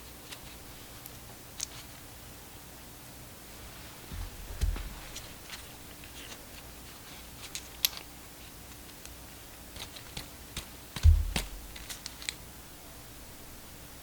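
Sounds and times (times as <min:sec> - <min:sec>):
heavy low thump: 0:04.1 - 0:05.2, 0:11.0 - 0:11.8.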